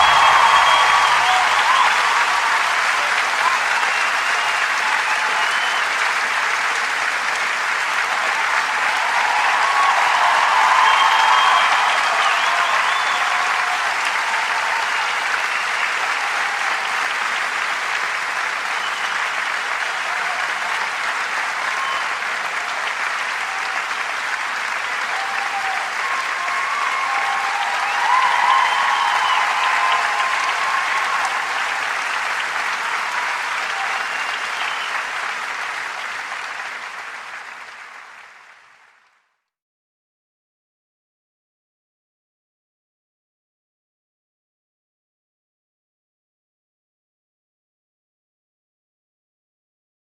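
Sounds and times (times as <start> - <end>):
crowd applause: 0.0 - 39.5.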